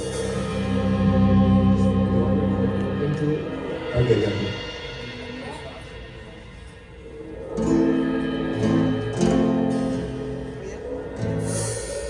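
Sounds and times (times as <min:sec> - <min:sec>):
sustained chords on an instrument: 0:00.0 - 0:03.6.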